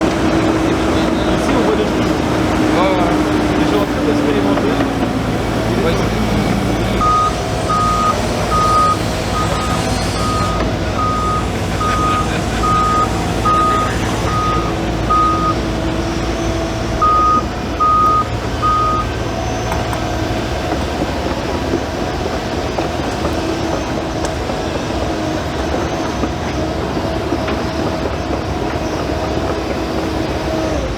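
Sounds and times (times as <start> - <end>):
bulldozer engine running: 0.0 - 30.9
reversing alarm beeping: 3.0 - 20.0.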